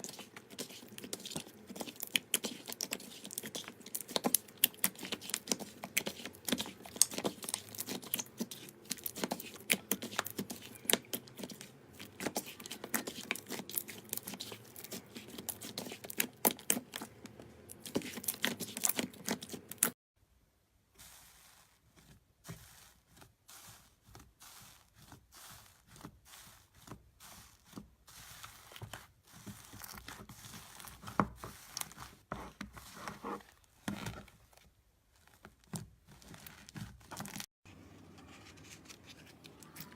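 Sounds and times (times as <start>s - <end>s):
slime crackling and popping: 0.0s - 19.9s.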